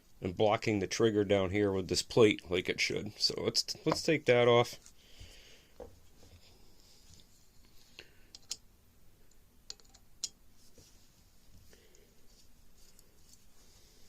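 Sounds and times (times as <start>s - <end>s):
small tool clicking on metal parts: 9.3s - 10.4s.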